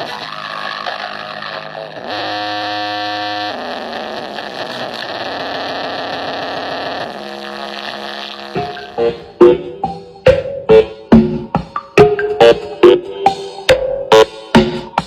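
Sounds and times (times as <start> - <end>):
held buzzy tones: 0.0 - 9.5.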